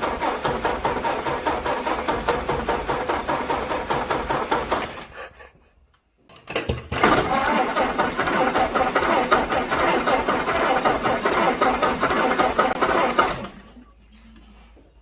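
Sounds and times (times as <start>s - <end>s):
engine cranking by starter: 0.0s - 5.1s, 6.5s - 13.9s.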